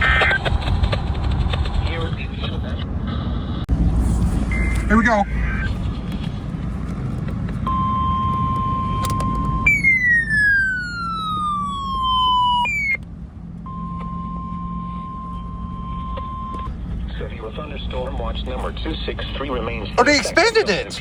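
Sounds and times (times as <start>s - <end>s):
steady warning alarm tone: 3.8s - 6.1s, 7.6s - 13.0s, 13.6s - 17.9s
siren-like tone falling in pitch: 4.0s - 5.9s, 7.6s - 13.0s, 13.6s - 16.7s.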